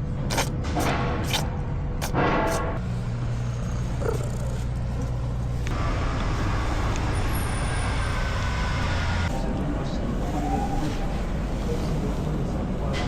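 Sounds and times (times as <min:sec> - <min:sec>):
vehicle engine humming: 0:00.0 - 0:09.8
road noise: 0:00.0 - 0:13.0.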